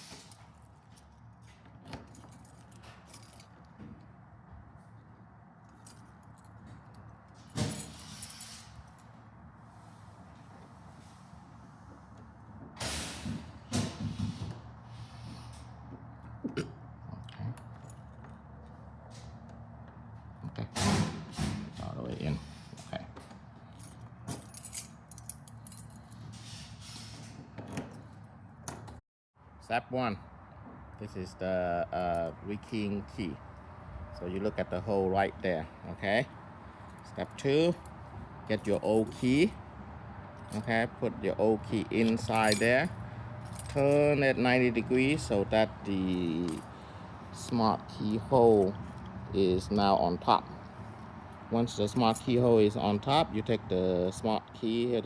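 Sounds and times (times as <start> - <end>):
keys jingling: 0.2 - 3.7, 5.7 - 9.2, 23.7 - 26.2, 37.7 - 39.6, 42.0 - 44.2, 46.0 - 46.8.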